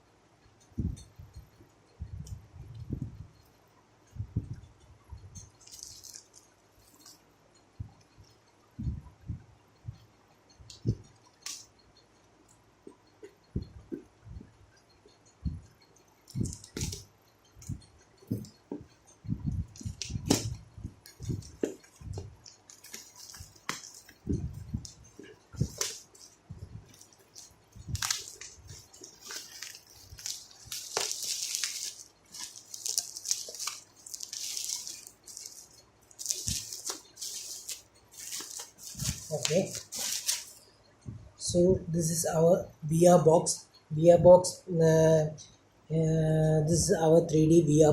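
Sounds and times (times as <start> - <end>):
wrapping rustling: 5.3 - 7.3, 10.7 - 11.8, 15.9 - 40.7.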